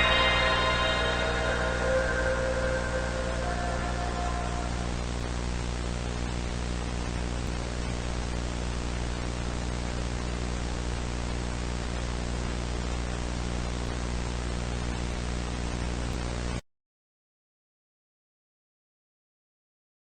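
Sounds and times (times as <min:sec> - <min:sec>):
low buzzing hum: 0:00.0 - 0:08.7.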